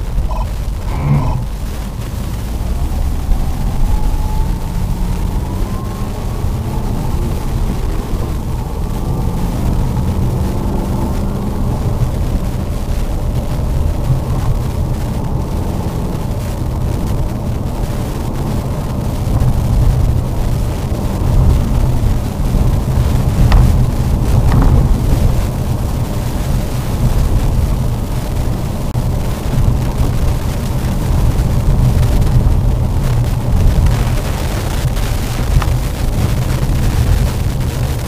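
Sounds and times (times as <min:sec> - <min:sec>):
faint rising whine: 0:00.0 - 0:11.8
car engine and tyres rumbling: 0:00.0 - 0:38.0.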